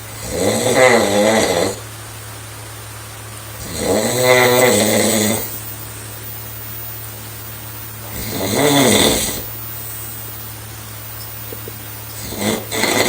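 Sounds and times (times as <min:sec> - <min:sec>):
steady low hum: 0:00.0 - 0:13.0
girl snoring: 0:00.2 - 0:01.8, 0:03.6 - 0:05.5, 0:08.0 - 0:09.5, 0:12.2 - 0:13.0.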